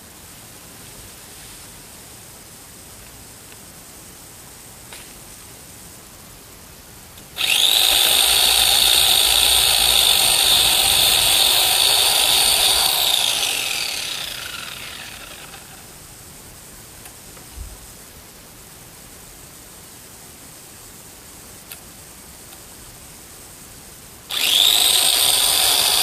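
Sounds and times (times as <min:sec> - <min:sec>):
electric chainsaw motor whine: 0:07.4 - 0:15.9, 0:24.3 - 0:26.0.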